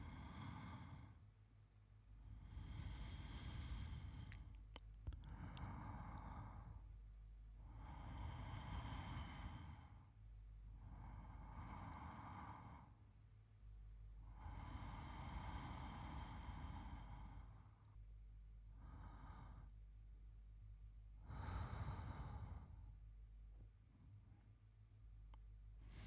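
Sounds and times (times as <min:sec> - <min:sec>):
man breathing in sleep: 0:00.0 - 0:01.2, 0:02.2 - 0:07.0, 0:07.6 - 0:13.0, 0:14.2 - 0:17.8, 0:18.7 - 0:19.8, 0:21.2 - 0:23.0, 0:25.8 - 0:26.0.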